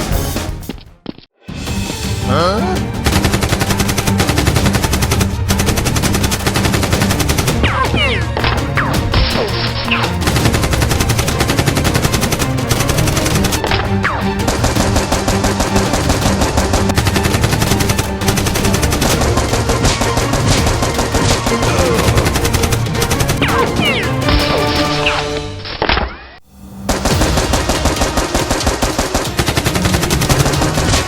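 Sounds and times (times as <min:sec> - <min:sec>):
rapid automatic gunfire: 0:03.0 - 0:08.2, 0:10.0 - 0:24.2, 0:26.9 - 0:31.0.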